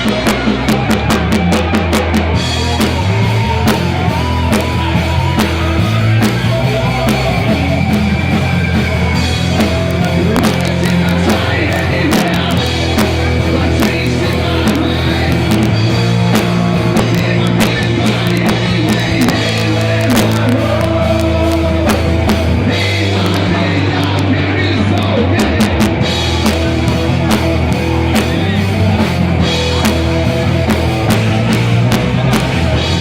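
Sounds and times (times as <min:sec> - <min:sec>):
heavy metal band playing: 0:00.0 - 0:33.0.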